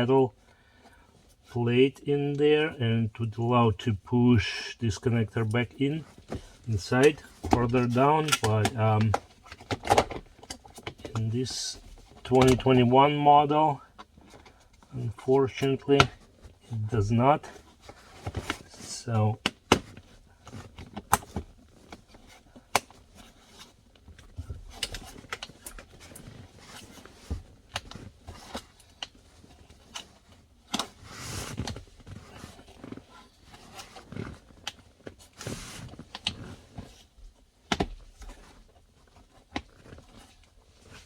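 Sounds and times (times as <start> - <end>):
cables being handled: 4.4 - 41.0
plastic parts clicking and knocking: 6.1 - 11.2, 37.6 - 41.0.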